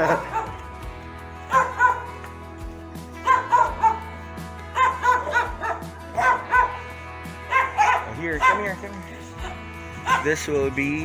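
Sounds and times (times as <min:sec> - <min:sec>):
dog yipping and barking: 0:00.0 - 0:00.6, 0:01.4 - 0:02.1, 0:03.2 - 0:04.0, 0:04.7 - 0:06.9, 0:07.5 - 0:08.8, 0:09.9 - 0:10.3.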